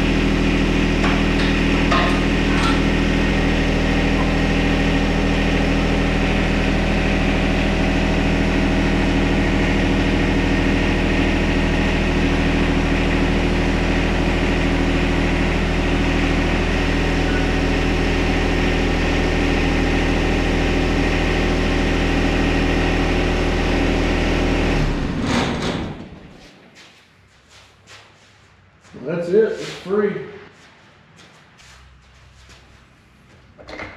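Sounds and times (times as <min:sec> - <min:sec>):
tractor diesel engine running: 0:00.0 - 0:26.4.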